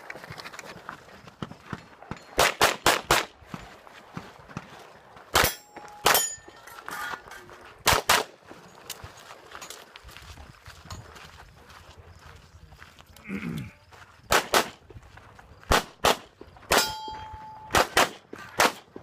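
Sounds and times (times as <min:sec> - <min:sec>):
pistol shots: 0:02.4 - 0:03.3, 0:05.3 - 0:06.2, 0:07.8 - 0:08.4, 0:14.3 - 0:14.8, 0:15.7 - 0:18.9.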